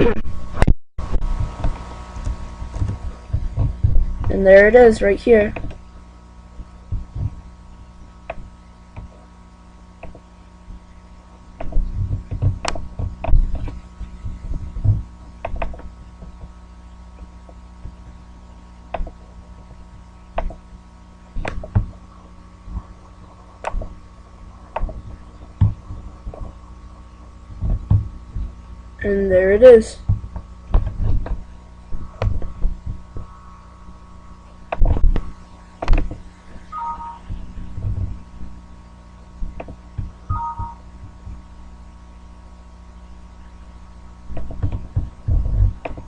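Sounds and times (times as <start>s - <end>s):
clicks and low thumps: 0.0s - 4.4s, 6.6s - 9.2s, 11.4s - 18.2s, 24.7s - 26.6s, 27.3s - 29.0s, 30.0s - 38.5s, 44.3s - 46.0s
electrical hum: 0.0s - 46.0s.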